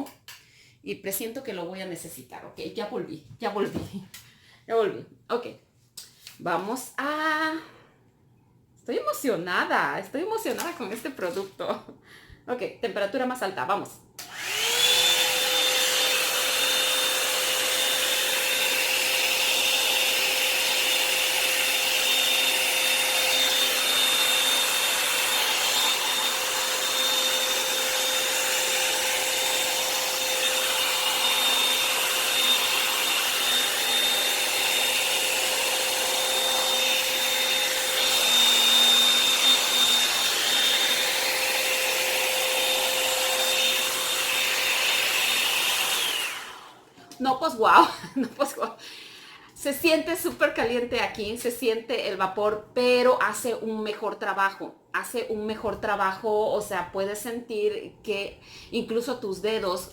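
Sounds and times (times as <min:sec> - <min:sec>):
hair dryer brush motor whining: 0:14.2 - 0:47.0.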